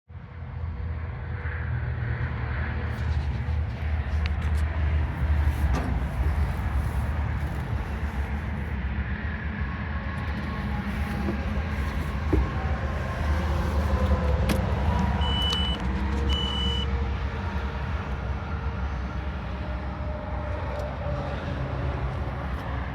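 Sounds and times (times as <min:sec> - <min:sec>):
diesel engine rumbling: 0:01.9 - 0:22.9
short high beeps: 0:15.2 - 0:16.9.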